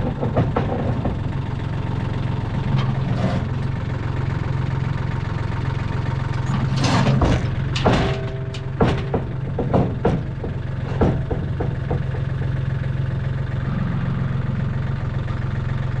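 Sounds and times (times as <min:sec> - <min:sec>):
metal clanks and knocks: 0:00.0 - 0:01.4, 0:02.6 - 0:03.6, 0:06.4 - 0:12.6
skid steer engine idling: 0:00.0 - 0:16.0.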